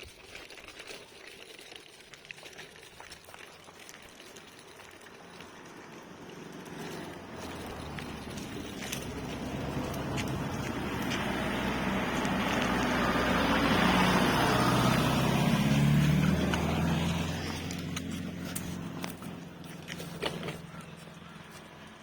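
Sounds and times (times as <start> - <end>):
car driving past: 5.4 - 22.0.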